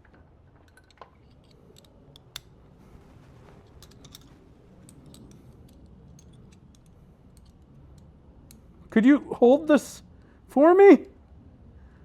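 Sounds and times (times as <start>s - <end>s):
small metal parts and tools clicking: 0.0s - 2.5s, 3.6s - 8.7s.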